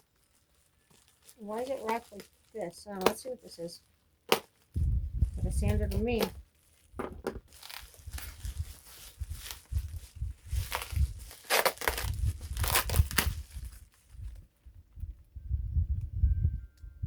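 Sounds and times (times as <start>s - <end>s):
packaging torn and crinkled: 0.0s - 14.5s
dull handling bumps: 7.0s - 7.6s.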